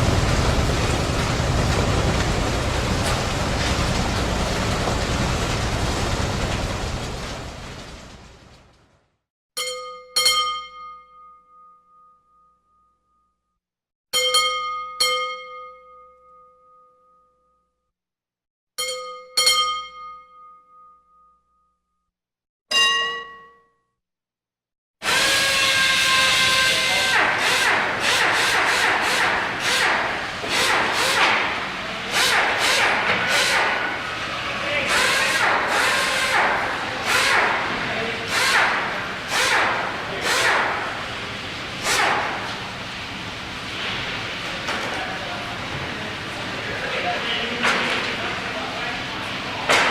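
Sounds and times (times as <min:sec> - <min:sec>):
loud steady noise: 0:00.0 - 0:08.8, 0:25.0 - 0:49.9.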